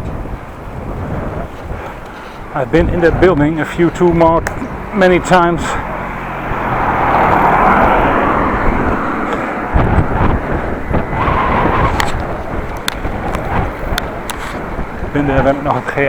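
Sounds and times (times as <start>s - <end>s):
low traffic rumble: 0.0s - 16.0s
motor vehicle passing close: 2.8s - 15.1s.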